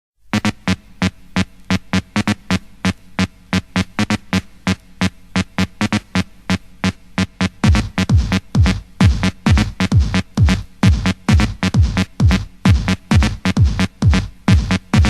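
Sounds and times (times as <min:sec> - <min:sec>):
clicky drum machine beat: 0:00.3 - 0:15.0
deep kick drums: 0:07.2 - 0:15.0.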